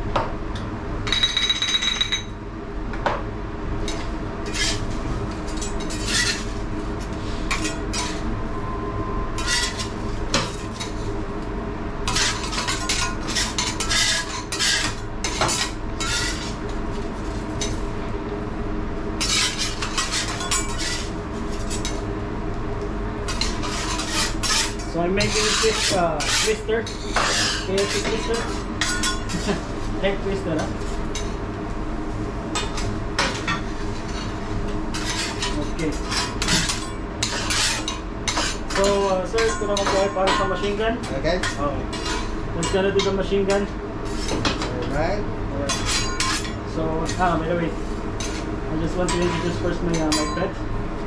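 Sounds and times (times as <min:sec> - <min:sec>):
steady low hum: 0:00.0 - 0:51.0
metal spatulas scraping griddle: 0:04.4 - 0:08.3, 0:09.4 - 0:11.1, 0:12.1 - 0:16.6, 0:19.2 - 0:22.0, 0:23.3 - 0:29.9, 0:32.6 - 0:40.8, 0:41.4 - 0:44.6, 0:45.7 - 0:50.4.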